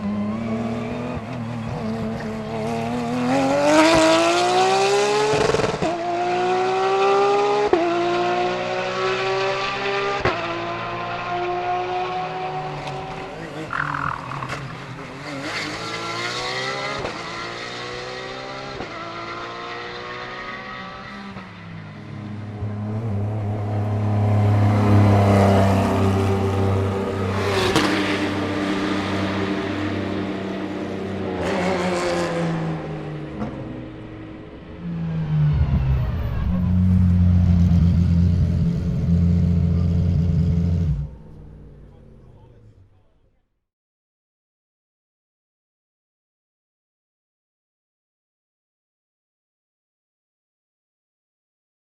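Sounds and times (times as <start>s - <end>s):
race car passing: 0.0s - 42.8s
race car engine at full throttle: 0.0s - 43.1s.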